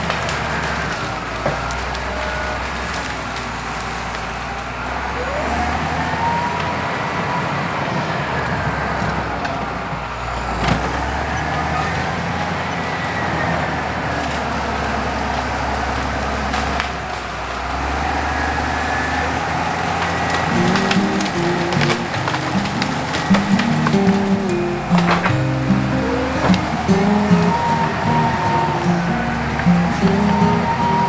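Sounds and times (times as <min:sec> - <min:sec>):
bulldozer diesel engine running: 0:17.3 - 0:31.0
sharp crack: 0:19.4 - 0:31.0
faint whine: 0:20.5 - 0:31.0.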